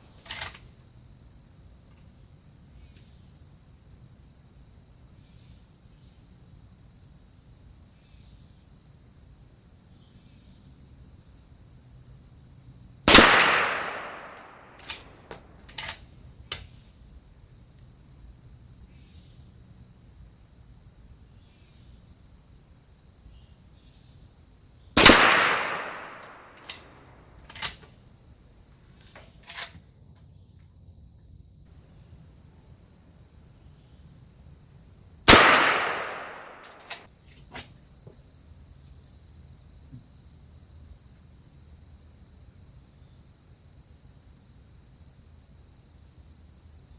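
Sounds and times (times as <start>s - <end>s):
rifle lever metallic clicks: 0.2s - 0.6s, 13.8s - 16.7s, 25.0s - 27.9s, 36.0s - 37.7s
rifle shots with echo: 13.1s - 15.9s, 25.0s - 27.7s, 35.3s - 37.1s.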